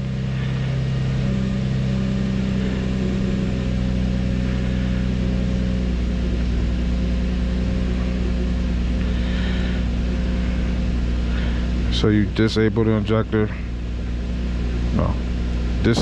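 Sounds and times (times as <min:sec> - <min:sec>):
car engine idling: 0:00.0 - 0:16.0.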